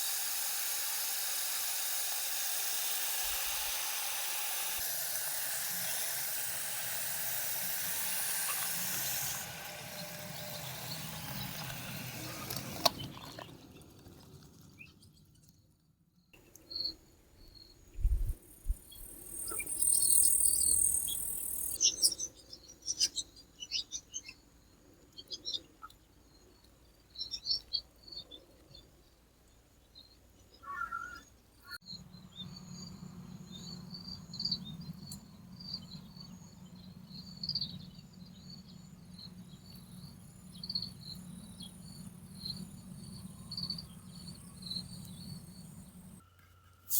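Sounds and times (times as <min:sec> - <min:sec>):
insects chirping: 0:00.0 - 0:13.5, 0:16.4 - 0:28.8, 0:29.5 - 0:46.2
water spraying: 0:00.0 - 0:13.8.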